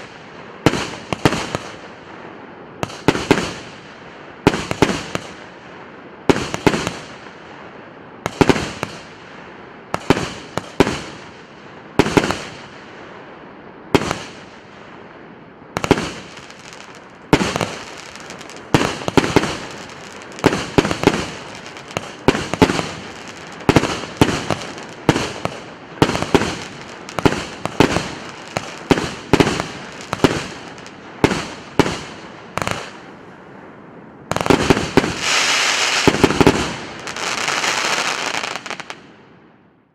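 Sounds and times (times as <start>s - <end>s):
dense firework crackling: 2.8s - 7.5s, 8.3s - 12.9s, 13.9s - 15.0s, 15.7s - 33.2s, 34.3s - 39.0s
firework booms with echo: 15.8s - 33.0s, 34.3s - 39.0s.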